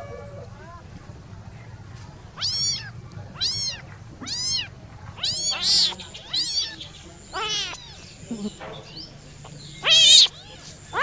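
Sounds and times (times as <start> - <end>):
kittens meowing: 2.4 - 11.0.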